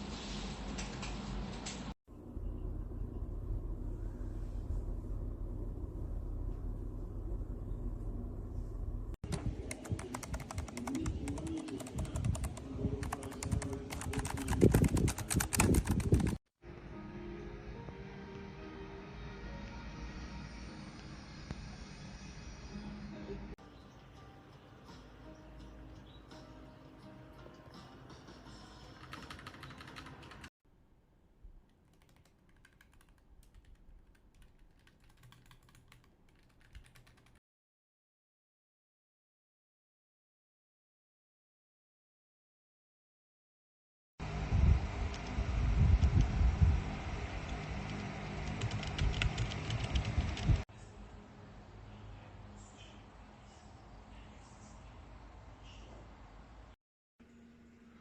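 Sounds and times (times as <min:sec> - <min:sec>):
mechanical keyboard key clicks: 0:48.6 - 0:50.4.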